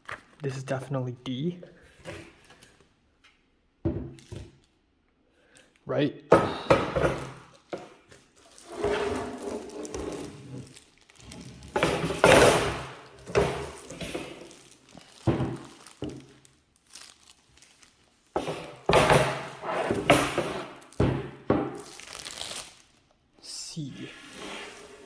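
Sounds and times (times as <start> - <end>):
scraping and rustling: 8.3 - 21.1, 24.1 - 25.0.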